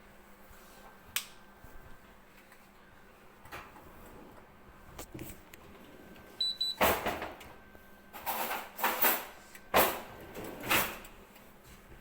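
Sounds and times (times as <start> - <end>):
high electronic dishwasher beep: 6.4 - 6.9.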